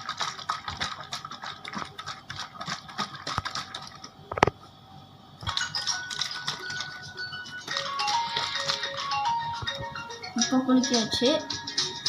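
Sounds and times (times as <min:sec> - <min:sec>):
plastic container rattling: 0:00.0 - 0:04.5.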